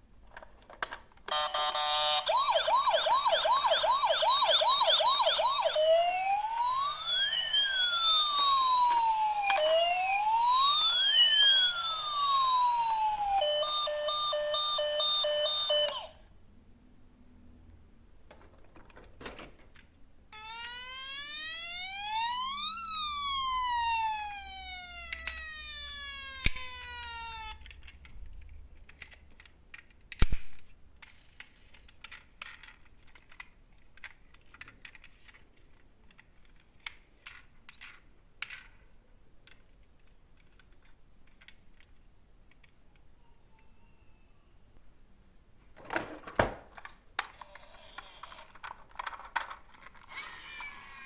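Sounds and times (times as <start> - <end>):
plastic toy cars clattering: 0.2 - 1.4, 18.2 - 20.0, 27.6 - 30.4, 31.0 - 42.8, 45.7 - 51.0
toy electronic siren wailing: 1.3 - 16.2, 20.4 - 27.8, 47.3 - 49.5, 50.1 - 51.0.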